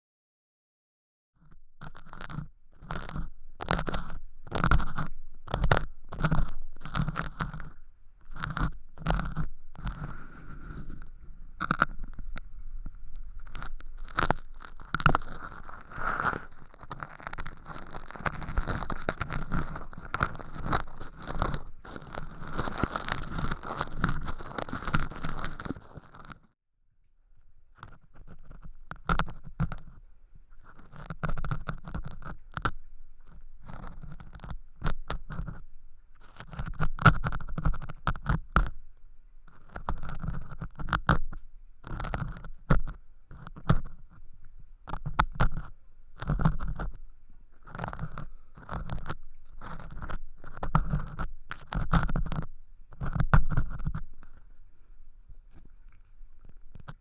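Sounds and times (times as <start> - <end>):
tools scraping crispy flakes: 9.2 - 26.3.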